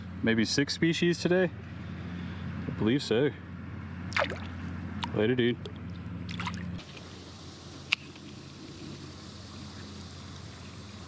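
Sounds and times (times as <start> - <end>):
creek water rushing: 4.1 - 7.2.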